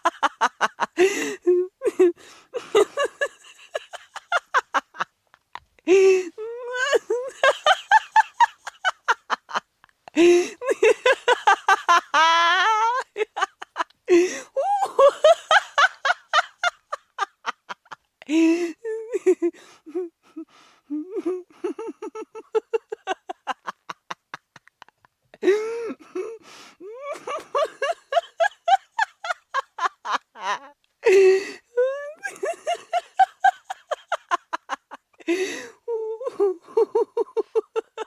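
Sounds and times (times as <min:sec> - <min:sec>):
woman laughing hard: 0:00.0 - 0:05.2, 0:05.9 - 0:38.0
sharp gasping in-breaths: 0:01.0 - 0:01.5, 0:02.2 - 0:02.7, 0:10.2 - 0:10.6, 0:14.1 - 0:14.6, 0:25.4 - 0:26.8, 0:31.0 - 0:31.7, 0:35.2 - 0:35.9.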